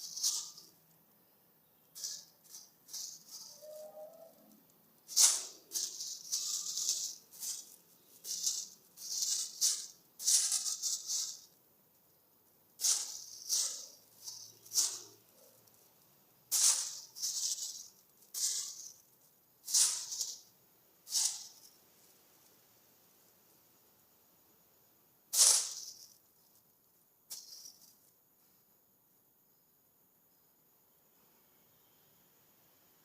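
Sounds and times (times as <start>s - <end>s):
plastic crinkling and rustling: 2.0s - 20.5s.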